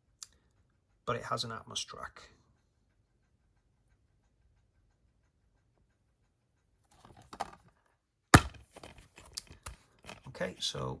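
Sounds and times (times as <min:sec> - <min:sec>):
plastic case clicks: 0:07.0 - 0:07.6
plastic case rustling: 0:07.0 - 0:07.6, 0:08.4 - 0:10.3
plastic case snapping: 0:08.4 - 0:10.2.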